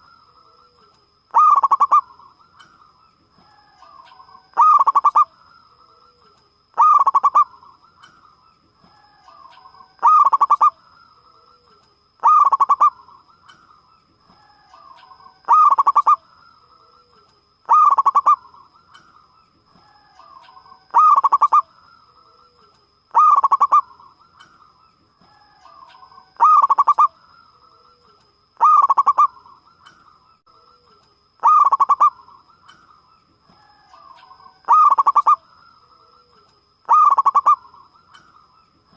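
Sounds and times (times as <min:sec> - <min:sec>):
dove cooing: 0:00.6 - 0:02.3, 0:03.4 - 0:05.3, 0:06.8 - 0:07.8, 0:09.0 - 0:10.8, 0:11.4 - 0:13.3, 0:14.4 - 0:16.2, 0:16.8 - 0:18.8, 0:19.8 - 0:21.7, 0:22.4 - 0:24.2, 0:25.3 - 0:29.6, 0:31.4 - 0:32.5, 0:33.6 - 0:35.4, 0:36.1 - 0:38.0.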